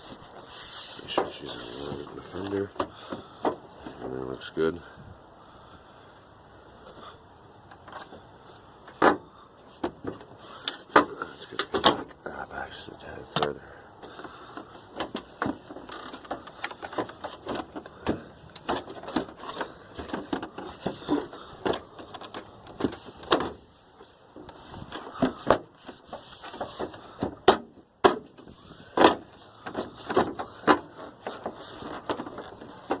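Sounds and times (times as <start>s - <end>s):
hand tools tapping on car parts: 24.4s - 33.0s.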